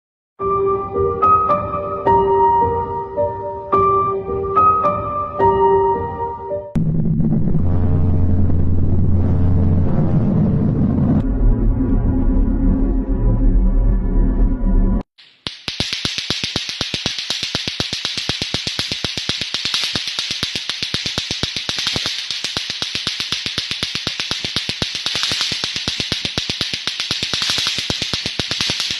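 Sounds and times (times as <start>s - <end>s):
rapid even clicks: 15.2s - 28.9s
steady high hiss: 15.2s - 28.9s.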